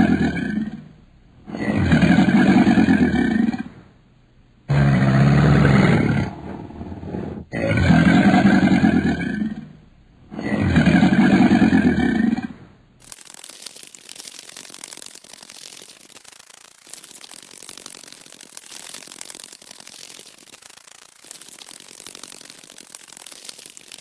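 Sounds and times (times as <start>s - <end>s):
large animal roaring: 0.0s - 3.8s, 4.7s - 12.6s
faint steady crackling: 8.2s - 24.0s.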